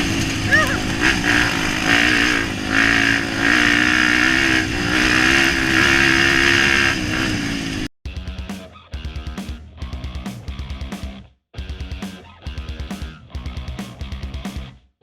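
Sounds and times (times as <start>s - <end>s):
motorcycle engine running: 0.0s - 8.4s
rock music with guitar and drums: 4.3s - 14.8s.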